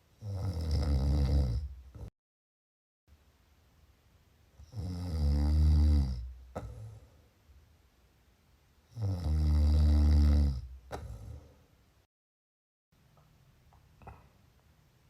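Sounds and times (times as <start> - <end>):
person snoring: 0.2 - 2.1, 4.6 - 7.1, 8.9 - 11.5.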